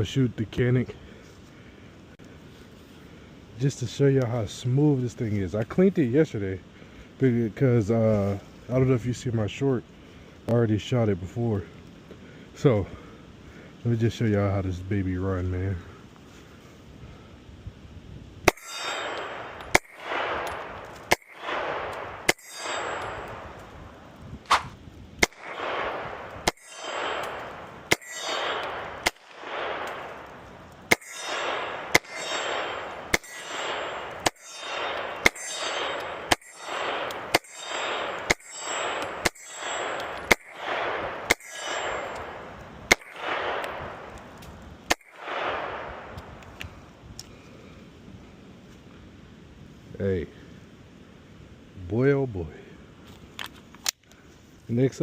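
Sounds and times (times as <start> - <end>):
pistol shots: 18.5 - 46.3.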